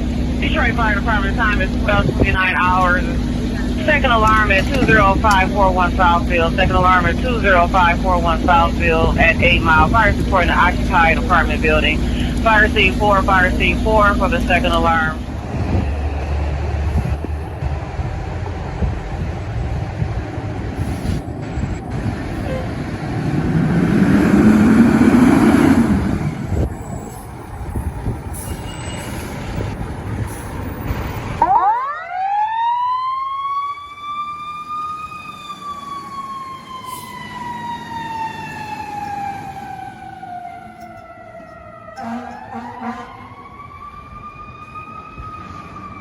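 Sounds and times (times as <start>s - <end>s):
fire truck engine and road noise: 0.0s - 46.0s
fire truck siren winding: 31.4s - 46.0s.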